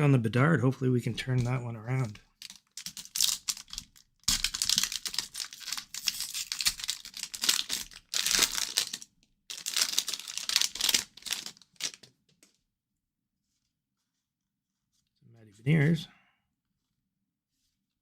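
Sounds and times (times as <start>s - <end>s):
card pack wrapper crinkling and tearing: 2.3s - 12.1s.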